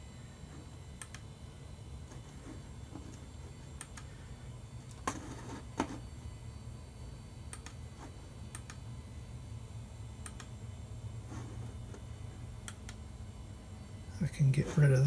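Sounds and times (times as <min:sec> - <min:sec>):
computer low hum: 0:00.0 - 0:15.0
faint clicks and ticks: 0:08.5 - 0:08.8, 0:10.2 - 0:10.5.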